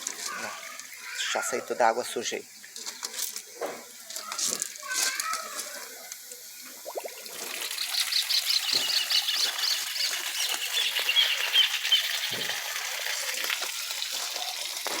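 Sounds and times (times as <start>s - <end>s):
water rushing from hose: 0.0s - 15.0s
bird chirping: 7.6s - 12.5s.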